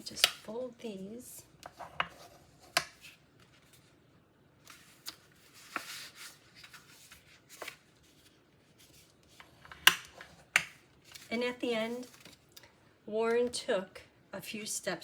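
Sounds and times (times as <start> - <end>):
paper rustle: 4.6 - 9.6, 10.2 - 12.5.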